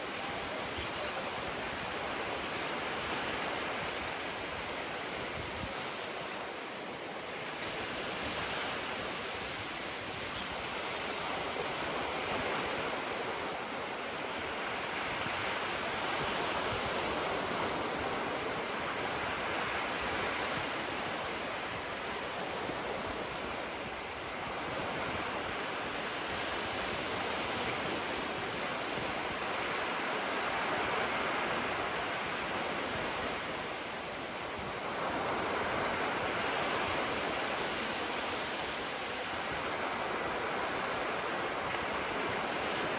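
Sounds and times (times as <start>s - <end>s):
small waves breaking on shore: 0.0s - 42.9s.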